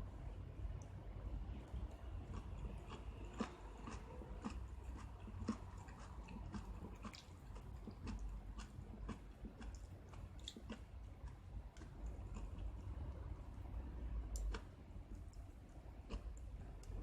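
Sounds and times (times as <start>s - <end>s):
low steady hum: 0.0s - 17.0s
person chewing crunchy food: 2.2s - 12.9s.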